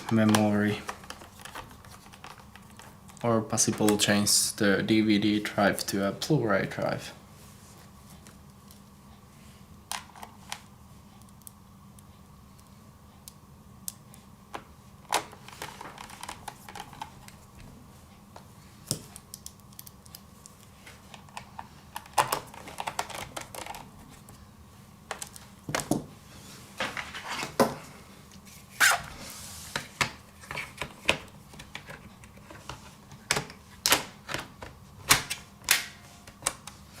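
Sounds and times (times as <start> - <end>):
faint steady hum: 0.0 - 37.0.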